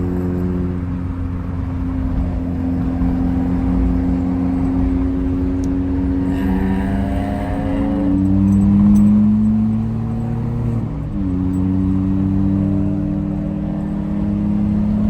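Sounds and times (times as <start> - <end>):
car engine accelerating: 0.0 - 15.0.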